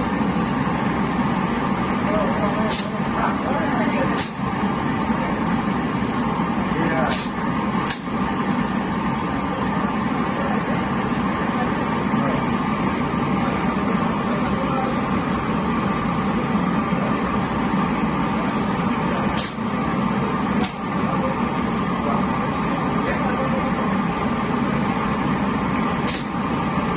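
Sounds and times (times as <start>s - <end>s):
machine mechanical whir: 0.0s - 26.9s
sharp clicks: 20.6s - 20.8s.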